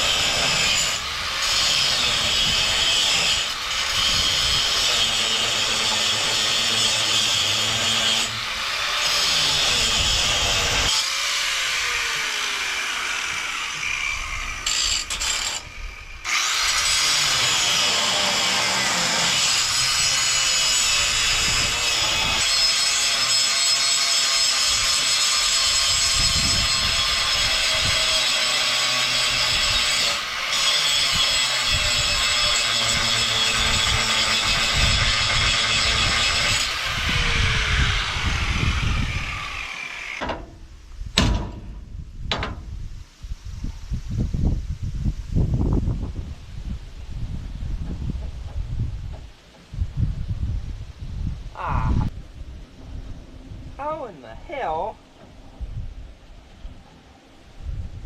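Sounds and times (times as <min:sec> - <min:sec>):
angle grinder cutting steel: 0:00.0 - 0:40.4.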